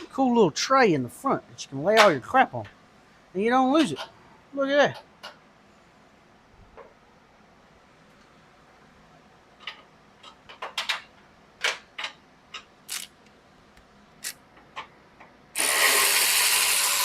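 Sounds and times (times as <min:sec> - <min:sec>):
loud power tool: 0:15.6 - 0:17.0.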